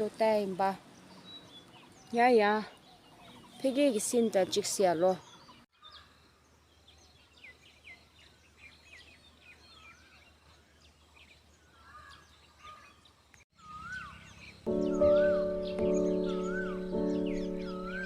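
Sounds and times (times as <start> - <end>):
small birds chirping: 0.0 - 18.0
whistled bird notes: 13.6 - 18.0.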